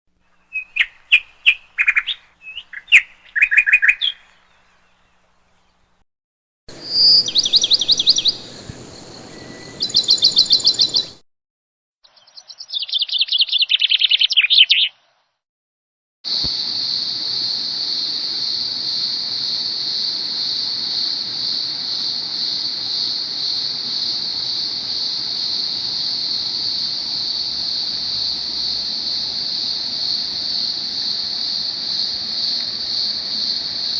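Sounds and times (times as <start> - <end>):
bird chirps and trills: 0.3 - 5.8, 6.7 - 11.2, 12.1 - 15.1.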